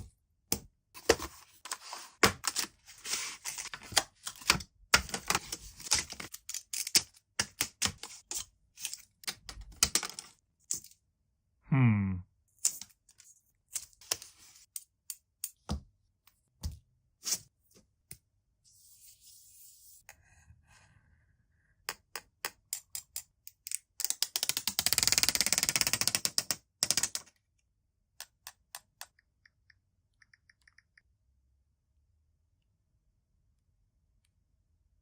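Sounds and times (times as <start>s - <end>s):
sharp clicks and taps: 28.2s - 31.1s.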